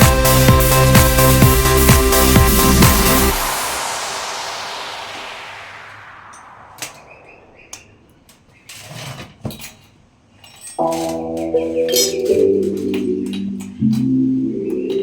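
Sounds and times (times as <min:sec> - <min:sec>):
background music: 0:00.0 - 0:04.2, 0:10.8 - 0:15.0
hiss: 0:01.7 - 0:07.7.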